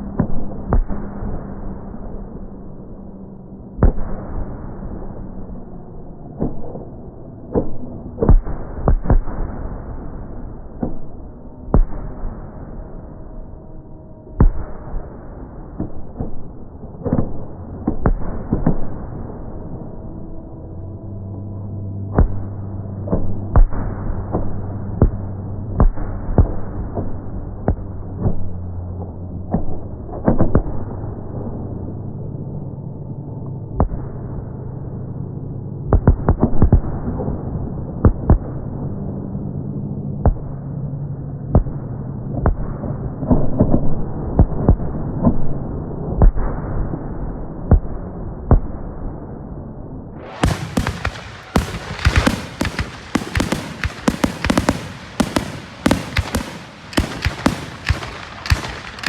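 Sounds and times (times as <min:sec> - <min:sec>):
steady low rumble: 0:00.0 - 0:59.0
fireworks bangs and crackling: 0:50.2 - 0:59.0.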